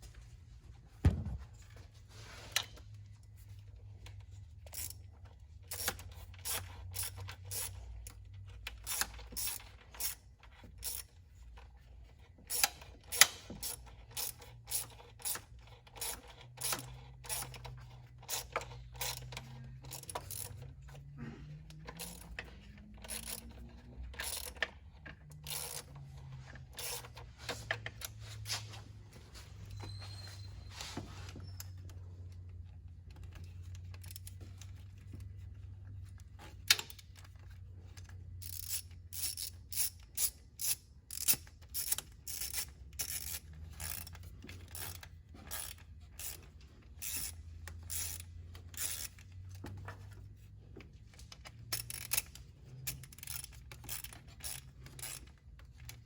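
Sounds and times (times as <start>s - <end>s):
ratchet tool clicking: 4.0s - 11.6s, 12.4s - 21.0s, 21.8s - 28.2s, 33.1s - 35.3s, 36.6s - 50.1s, 51.1s - 56.0s.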